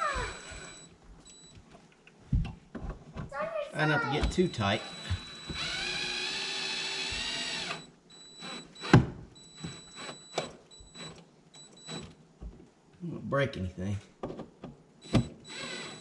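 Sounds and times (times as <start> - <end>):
power drill driving screw: 0.0 - 0.9, 4.8 - 9.0, 9.6 - 11.2, 15.0 - 16.0.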